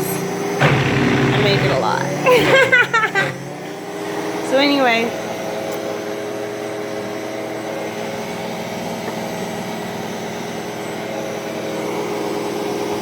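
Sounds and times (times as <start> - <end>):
blender motor running: 0.6 - 3.7.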